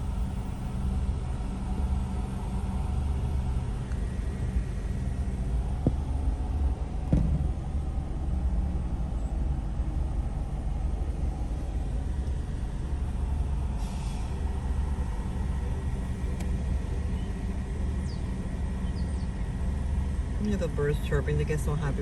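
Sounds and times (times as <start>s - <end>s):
car engine and tyres rumbling: 0.0s - 22.0s
short knock: 7.1s - 7.5s
brief hiss: 13.8s - 14.4s.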